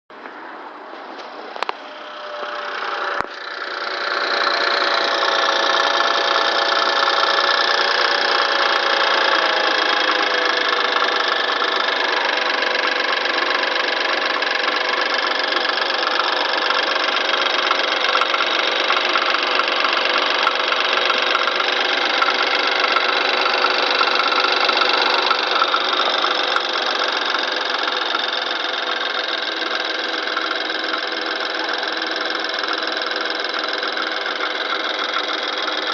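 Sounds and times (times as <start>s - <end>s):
engine rattle: 0.1s - 35.9s
car engine idling: 0.8s - 35.9s
engine starter click: 1.2s - 35.9s.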